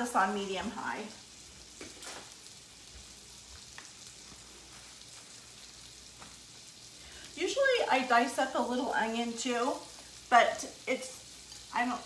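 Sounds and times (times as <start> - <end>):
steaks sizzling in a frying pan: 0.0 - 12.0.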